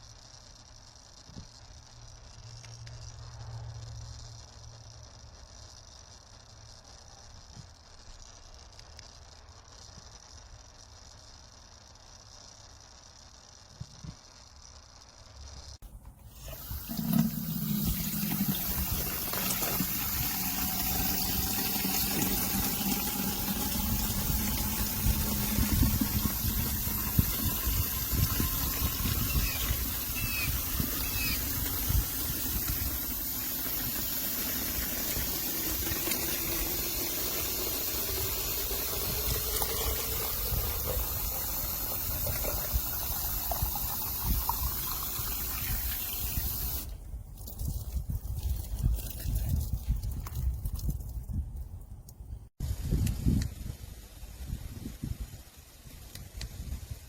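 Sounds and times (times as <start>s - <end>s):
water rushing from a hose: 16.2s - 51.4s.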